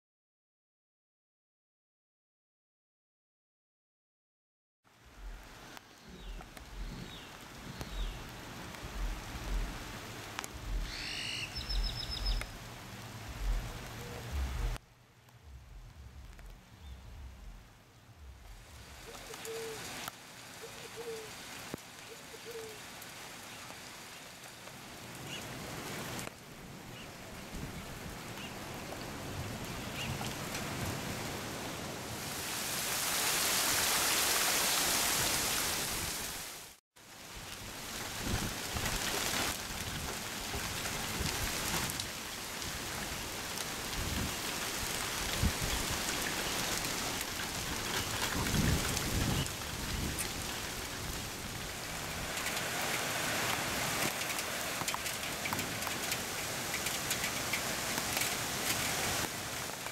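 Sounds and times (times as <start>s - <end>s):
rain falling: 4.9s - 59.9s
raindrops ticking: 5.0s - 20.2s, 37.1s - 59.9s
low thumps: 6.2s - 10.9s, 13.2s - 14.8s, 15.4s - 19.1s
bird calling: 10.6s - 12.6s, 19.0s - 20.0s, 20.6s - 21.3s, 22.1s - 22.8s.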